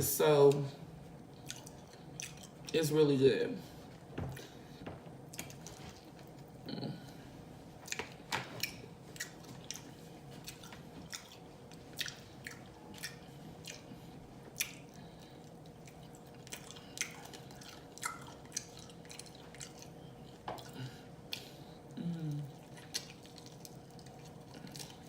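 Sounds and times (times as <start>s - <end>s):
wet open-mouthed chewing: 1.3s - 2.7s, 5.3s - 6.5s, 7.8s - 25.0s.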